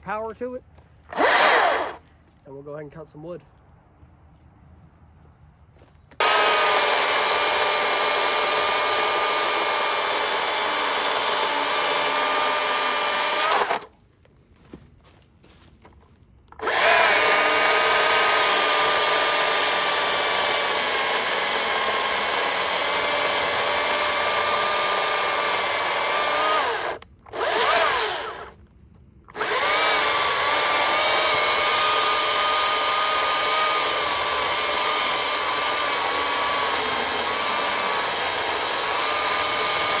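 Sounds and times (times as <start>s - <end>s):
battery chainsaw cutting wood: 1.1s - 2.0s, 6.2s - 13.9s, 16.6s - 28.6s, 29.3s - 40.0s.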